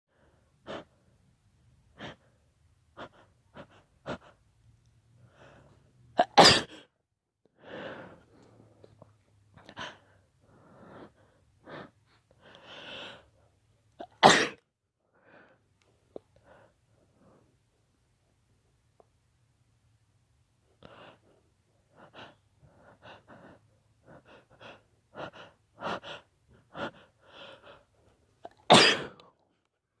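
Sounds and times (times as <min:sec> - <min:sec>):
person sneezing: 0:06.2 - 0:06.8, 0:14.0 - 0:14.6, 0:28.5 - 0:29.2.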